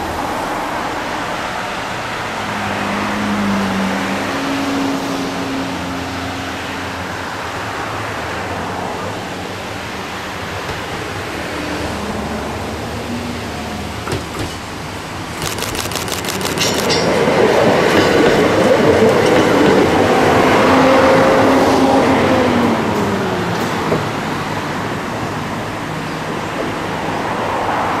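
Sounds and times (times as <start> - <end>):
train wheels clicking over track: 15.3 - 19.7.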